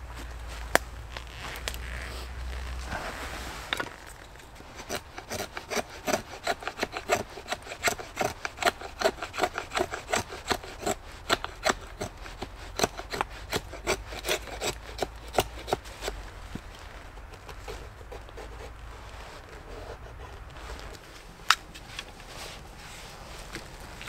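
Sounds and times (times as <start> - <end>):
rasping strokes on wood: 4.6 - 16.2.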